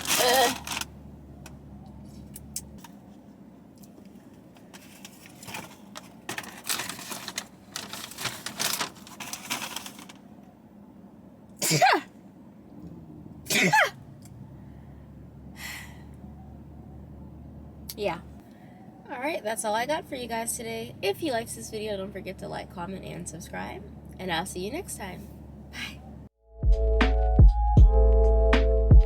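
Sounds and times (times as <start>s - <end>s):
paper wrappers crinkling: 0.0s - 0.9s, 4.1s - 10.2s.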